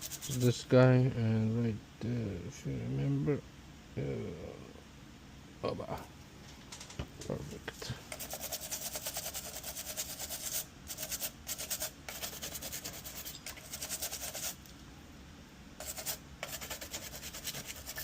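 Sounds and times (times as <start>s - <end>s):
scrubbing a circuit board: 0.0s - 0.6s, 8.1s - 14.6s, 15.8s - 18.0s.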